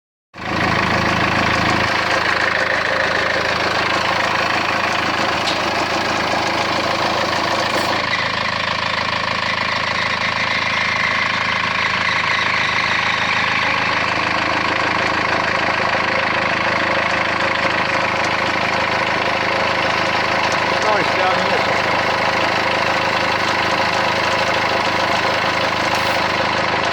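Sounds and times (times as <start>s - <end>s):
vehicle engine idling: 0.4s - 26.9s
accessory drive running noise: 18.1s - 26.6s.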